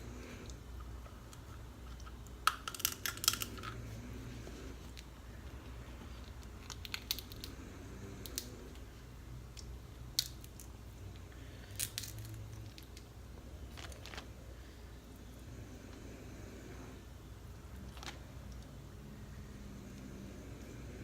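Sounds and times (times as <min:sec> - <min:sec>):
steady low hum: 0:00.0 - 0:21.0
crab shells cracking: 0:01.3 - 0:03.8, 0:06.2 - 0:07.6, 0:08.2 - 0:08.8, 0:09.5 - 0:10.8, 0:11.6 - 0:13.1.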